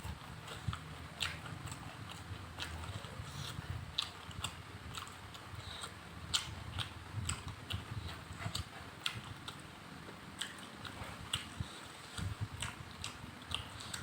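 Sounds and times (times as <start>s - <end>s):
person chewing food: 0.0s - 14.0s.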